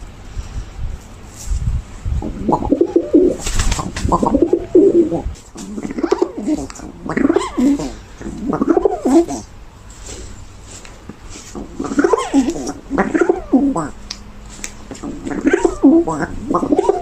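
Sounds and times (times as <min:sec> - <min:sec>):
pigeon cooing: 0:02.2 - 0:09.6, 0:11.4 - 0:14.1, 0:14.9 - 0:17.0.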